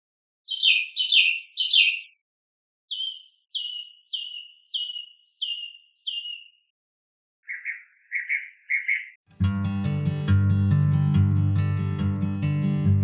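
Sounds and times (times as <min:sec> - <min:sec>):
bird chirping: 0:00.5 - 0:02.2, 0:02.9 - 0:06.7, 0:07.4 - 0:09.2.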